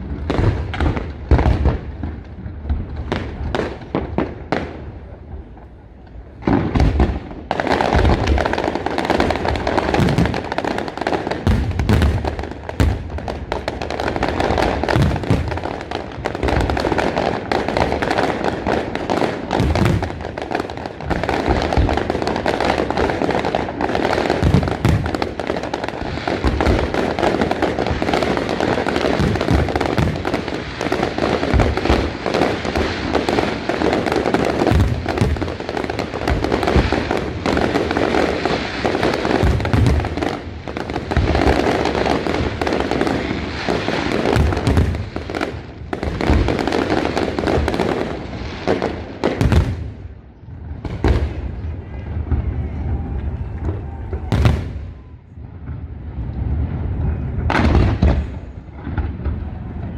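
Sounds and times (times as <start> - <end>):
fireworks crackling: 0.0 - 59.9
fireworks deep booms: 0.0 - 59.9.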